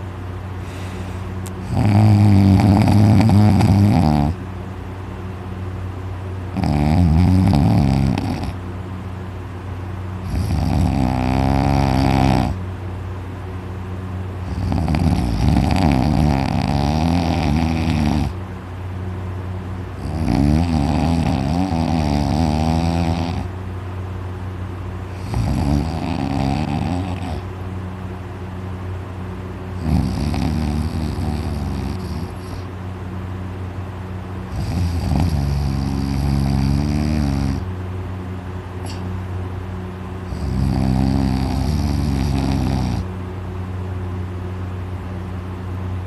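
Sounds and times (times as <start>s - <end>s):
quiet breathing: 0.6s - 1.5s
man snoring heavily: 0.7s - 4.4s, 6.6s - 8.6s, 10.2s - 12.6s, 14.5s - 18.4s, 20.0s - 23.5s, 25.1s - 27.5s, 29.8s - 32.7s, 34.5s - 37.7s, 40.3s - 43.1s.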